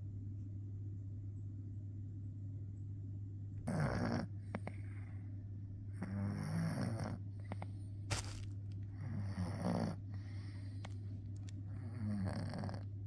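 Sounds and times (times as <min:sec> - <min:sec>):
steady low hum: 0:00.0 - 0:13.0
cat snoring: 0:03.6 - 0:05.1, 0:05.9 - 0:08.2, 0:09.0 - 0:10.9, 0:11.7 - 0:13.0.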